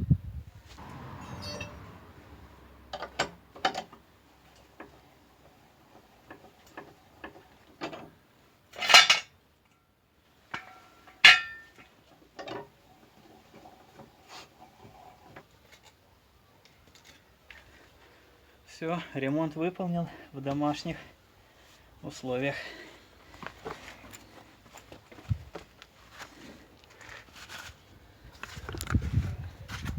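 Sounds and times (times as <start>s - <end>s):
low rumble: 0.8s - 3.7s
loud sharp metal clanks: 0.8s - 3.9s
metal clanks of car jack and tools: 0.8s - 5.0s, 8.7s - 9.3s, 10.5s - 11.8s.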